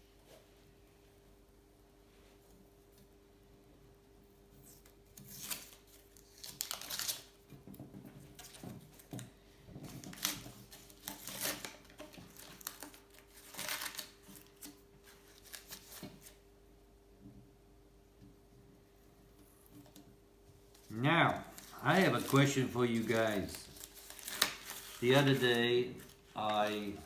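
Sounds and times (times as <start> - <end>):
tape and paper crinkling: 4.7 - 7.4, 8.3 - 16.4, 20.7 - 27.0
paper ripping: 4.8 - 7.3, 10.0 - 16.3, 20.8 - 27.0.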